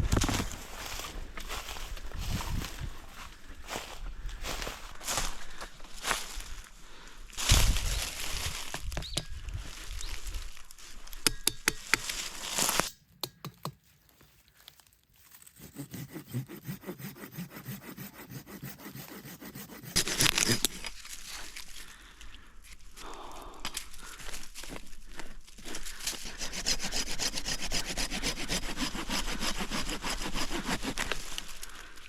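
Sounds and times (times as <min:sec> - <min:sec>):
wood rasping: 0:11.2 - 0:13.6, 0:15.4 - 0:21.7, 0:25.6 - 0:31.9
sawing strokes on wood: 0:15.3 - 0:21.6, 0:25.8 - 0:31.8.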